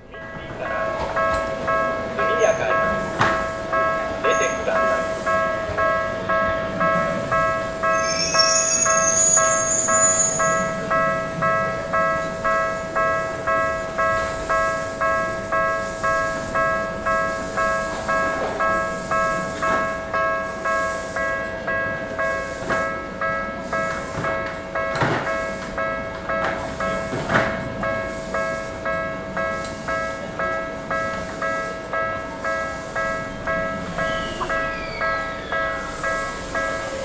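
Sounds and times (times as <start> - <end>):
level crossing warning bell: 0.0 - 37.0
train passing: 0.0 - 37.0
high train squeal: 7.0 - 11.0, 32.4 - 37.0.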